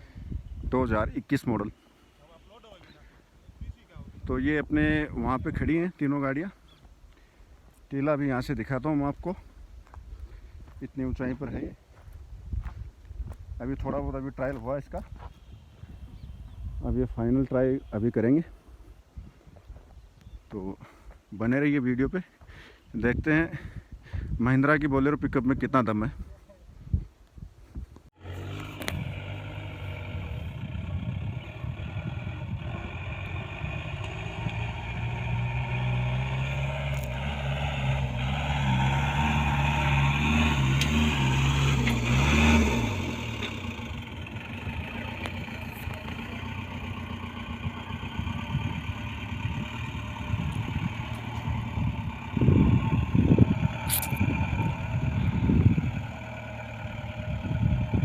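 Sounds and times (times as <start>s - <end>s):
diesel engine working hard: 28.2s - 58.0s
low rumbling: 28.2s - 58.0s.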